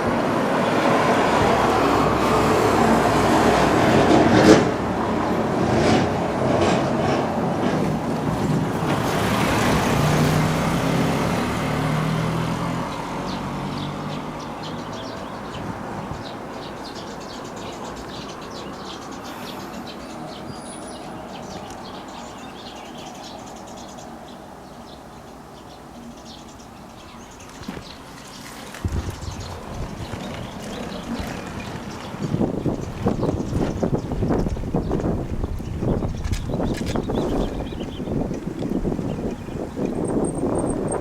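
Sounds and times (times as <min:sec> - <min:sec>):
vehicle engine passing by: 0:00.0 - 0:18.5
road ambience: 0:00.0 - 0:41.0.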